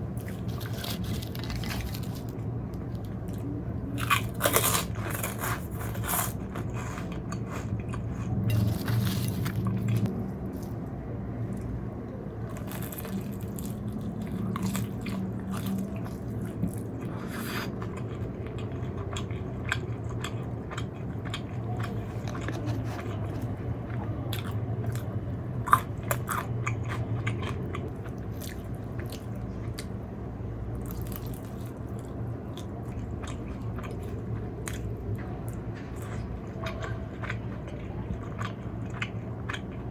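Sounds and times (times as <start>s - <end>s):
chewing fried food: 0.0s - 39.9s
steady low hum: 0.0s - 39.9s.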